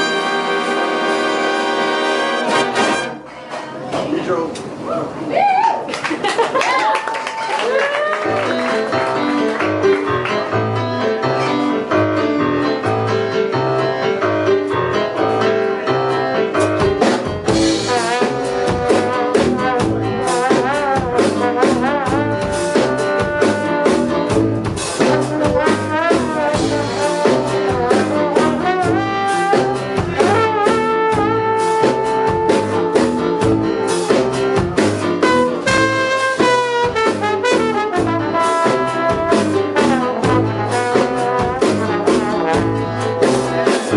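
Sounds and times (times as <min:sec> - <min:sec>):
drum kit: 0:00.0 - 0:03.2, 0:08.0 - 0:43.9
bass: 0:00.0 - 0:03.3, 0:07.6 - 0:43.9
brass section: 0:00.0 - 0:03.4, 0:17.5 - 0:43.9
guitar: 0:08.2 - 0:43.9.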